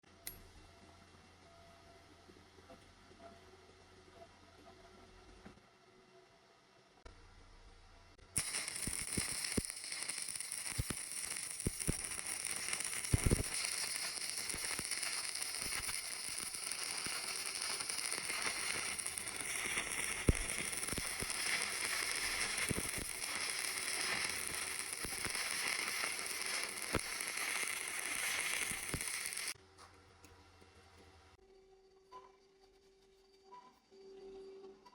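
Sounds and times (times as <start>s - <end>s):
welding arc crackling and hissing: 8.3s - 29.6s
sharp pops: 8.4s - 29.6s.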